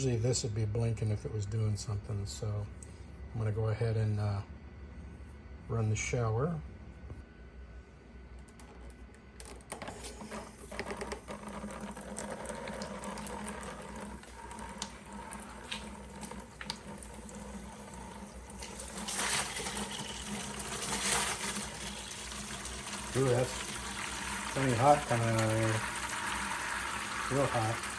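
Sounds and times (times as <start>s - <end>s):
shower water running: 11.3s - 27.9s.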